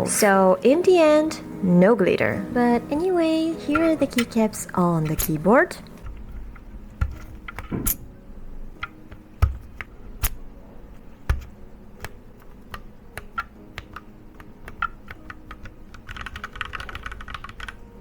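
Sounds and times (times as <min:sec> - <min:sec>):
mechanical keyboard keys clicking: 0:11.3 - 0:17.8.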